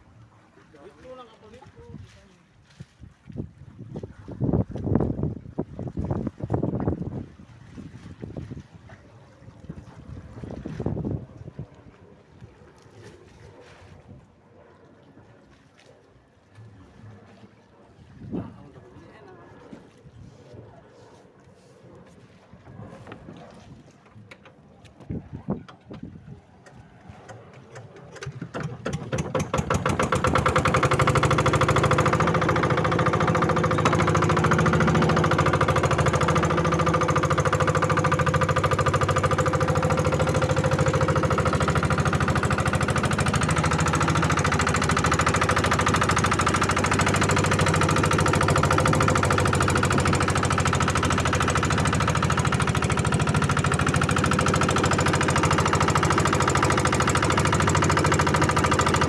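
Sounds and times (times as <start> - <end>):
boat engine chugging: 22.5 - 59.0.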